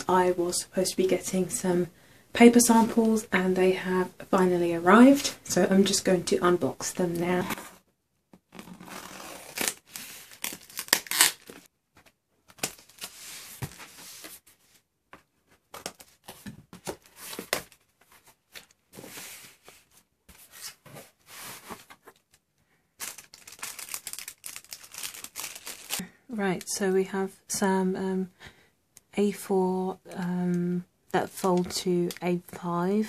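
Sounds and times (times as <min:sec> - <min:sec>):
packaging being torn and rustled: 0:08.6 - 0:11.7, 0:23.0 - 0:26.0.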